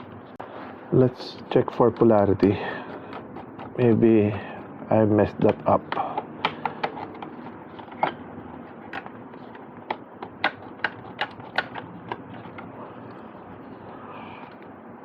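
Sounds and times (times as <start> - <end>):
sharp clicks and taps: 8.9 - 13.2.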